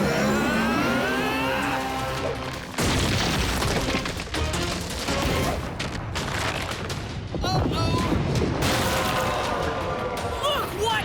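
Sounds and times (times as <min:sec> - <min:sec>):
action background music: 0:00.0 - 0:07.3.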